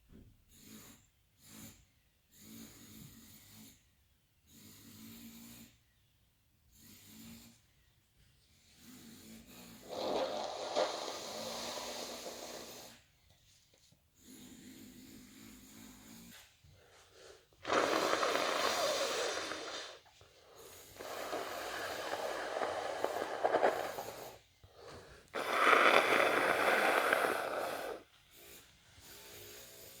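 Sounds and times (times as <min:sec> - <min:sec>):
person blowing nose: 0:09.8 - 0:13.0, 0:17.0 - 0:28.1.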